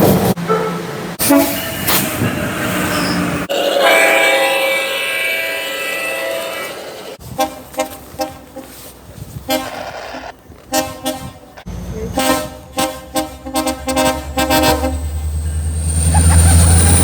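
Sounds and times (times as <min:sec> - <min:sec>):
short train horn toots: 0:01.2 - 0:03.2, 0:07.3 - 0:08.8, 0:12.1 - 0:15.2
train horn: 0:01.2 - 0:03.2, 0:07.2 - 0:08.8, 0:09.4 - 0:09.9, 0:10.7 - 0:11.5, 0:12.1 - 0:15.3.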